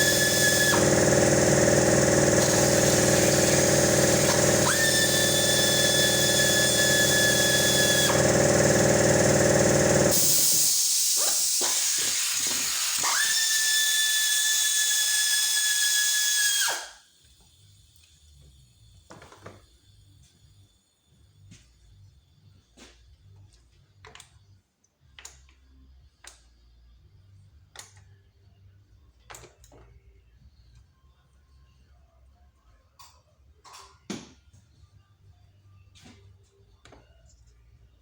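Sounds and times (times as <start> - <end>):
low machine hum: 0.0 - 10.2
power tool whining: 0.0 - 17.0.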